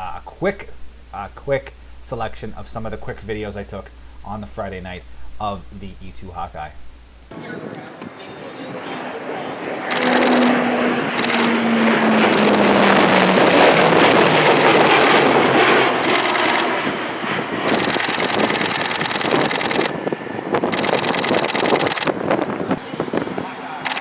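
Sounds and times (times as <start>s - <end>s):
turboprop aircraft flying past: 7.3s - 24.0s.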